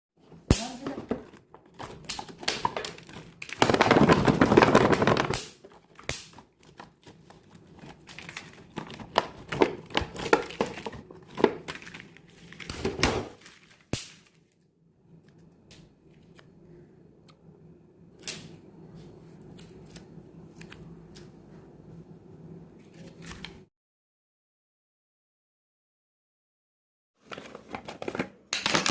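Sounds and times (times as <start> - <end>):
plastic packaging crinkling: 0.6 - 14.7
faint steady hum: 14.5 - 23.6.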